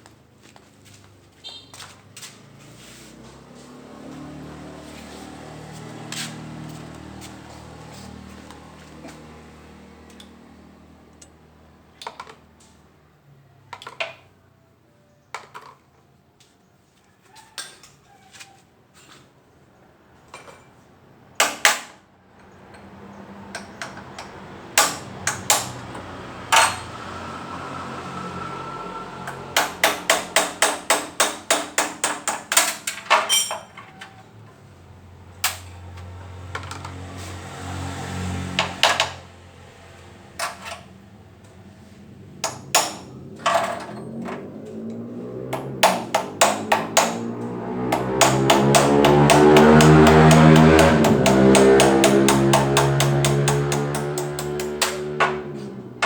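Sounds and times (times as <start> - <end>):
tools knocking on metal: 23.6 - 26.9, 29.3 - 34.0, 45.5 - 55.5
hammer blows on metal: 47.9 - 55.5.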